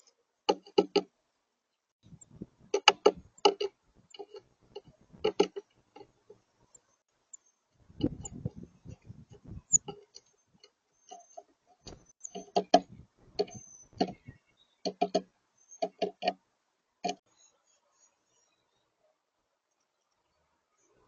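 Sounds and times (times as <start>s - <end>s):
bird pecking seed taps: 2.7s - 6.4s, 11.9s - 16.4s.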